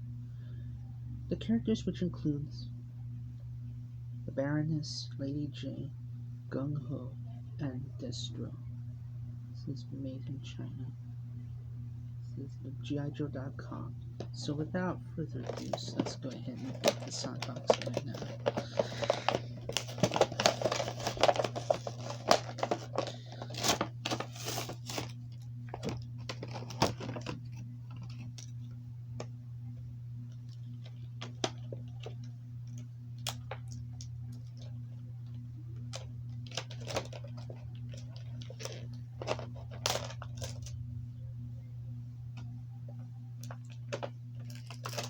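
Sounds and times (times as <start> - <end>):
steady low hum: 0.0 - 45.0
plastic packaging crinkling and tearing: 15.4 - 28.5, 30.5 - 40.8, 43.4 - 45.0.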